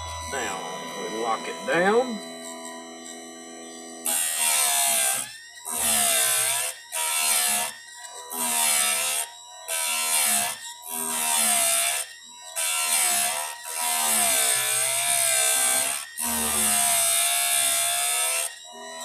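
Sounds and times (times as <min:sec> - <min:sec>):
motor whine: 0:00.0 - 0:06.6
chain sharpener grinding: 0:00.0 - 0:19.0.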